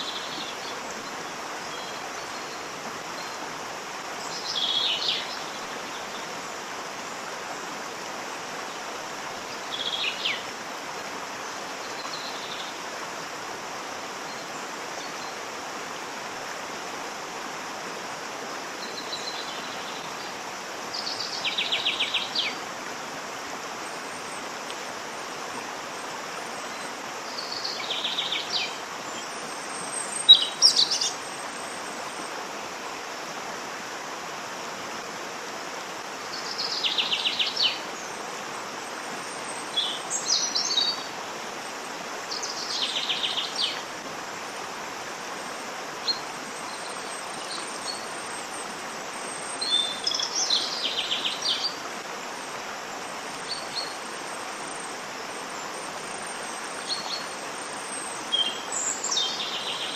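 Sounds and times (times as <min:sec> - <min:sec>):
songbirds calling: 0:00.0 - 0:07.8, 0:08.4 - 0:10.6, 0:18.4 - 0:32.4, 0:36.1 - 0:44.0, 0:45.3 - 0:59.9
waterfall rushing: 0:00.0 - 0:59.9.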